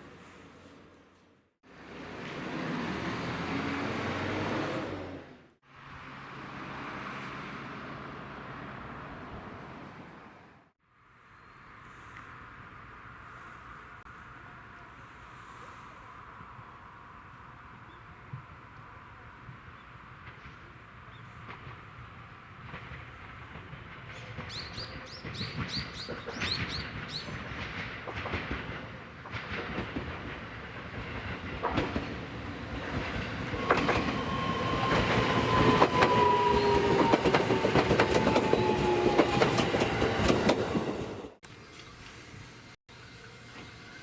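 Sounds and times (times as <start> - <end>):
train wheels clacking over rail joints: 22.6 - 41.2.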